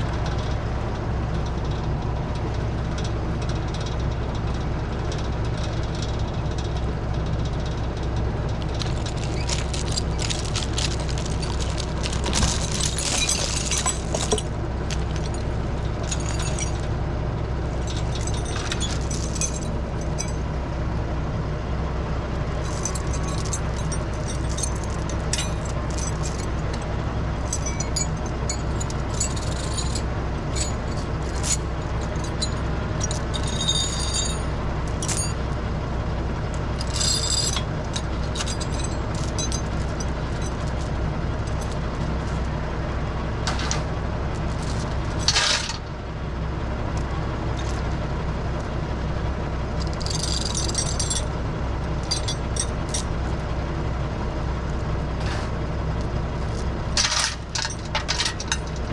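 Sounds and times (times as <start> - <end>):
tractor diesel engine running: 0.0 - 58.9
metal clanks and knocks: 8.5 - 17.0, 17.7 - 20.4, 22.6 - 35.5, 36.6 - 42.6, 43.4 - 45.9, 52.0 - 53.3, 56.4 - 58.9.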